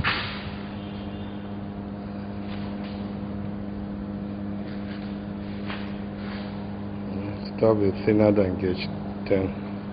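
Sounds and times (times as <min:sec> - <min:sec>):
arc welding machine humming: 0:00.0 - 0:09.9.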